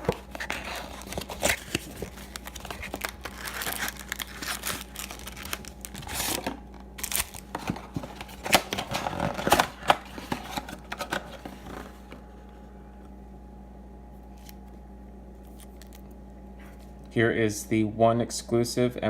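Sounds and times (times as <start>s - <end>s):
packaging torn and crinkled: 0.0s - 11.6s, 15.4s - 16.2s.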